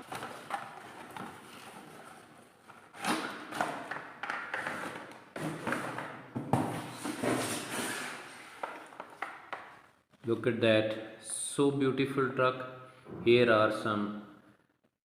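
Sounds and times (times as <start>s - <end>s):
packaging rustling and scraping: 0.0s - 9.2s.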